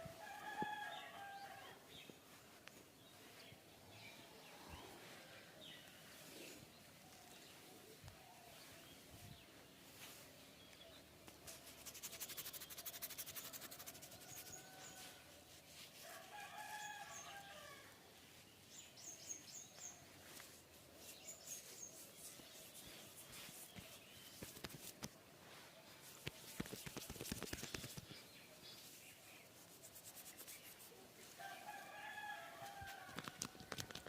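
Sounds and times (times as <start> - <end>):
faint rooster crow: 0.0 - 2.1, 13.4 - 18.1, 31.2 - 34.0
small birds chirping: 2.0 - 15.2, 18.2 - 31.4.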